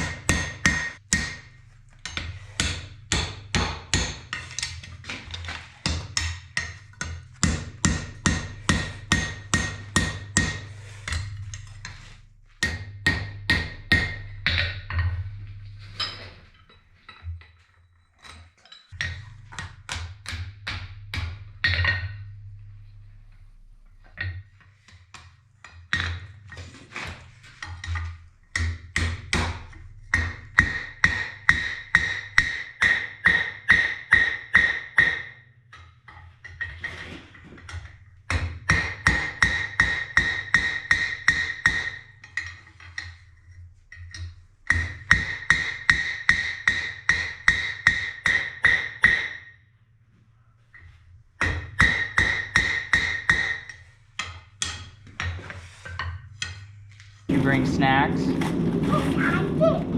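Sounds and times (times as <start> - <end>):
hammer striking steel on anvil: 0.0 - 16.8, 18.9 - 22.6, 27.6 - 36.2, 38.3 - 43.2, 43.9 - 49.6, 51.4 - 55.3
low steady hum: 0.0 - 32.7, 49.6 - 59.9.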